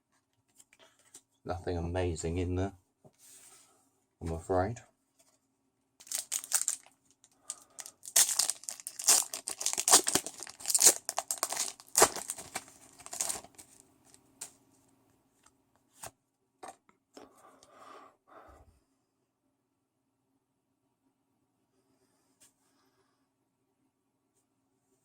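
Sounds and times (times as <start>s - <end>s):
foil wrapper tearing and crinkling: 6.0s - 13.8s.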